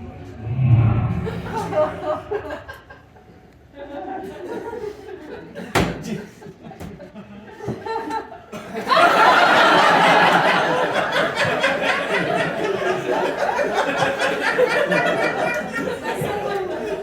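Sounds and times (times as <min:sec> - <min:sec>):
people laughing: 0:03.8 - 0:17.0.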